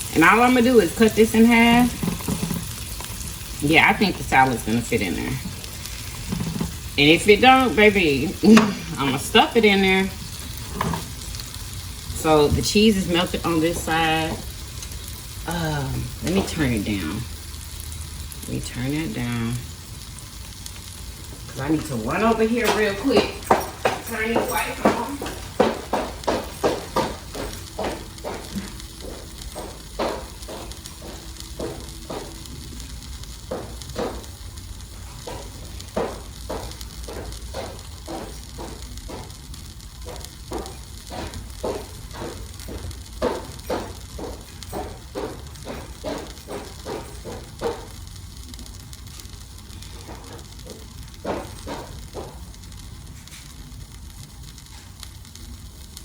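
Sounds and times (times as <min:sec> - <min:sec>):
cheese sizzling in a pan: 0:00.0 - 0:56.0
low steady hum: 0:00.0 - 0:56.0
crackling pops: 0:01.4 - 0:07.7, 0:22.6 - 0:56.0.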